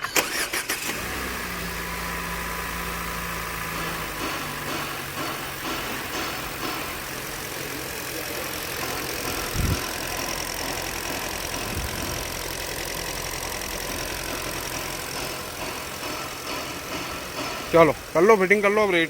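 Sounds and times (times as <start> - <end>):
car engine idling: 0.0 - 19.0
low thumps: 9.0 - 18.2.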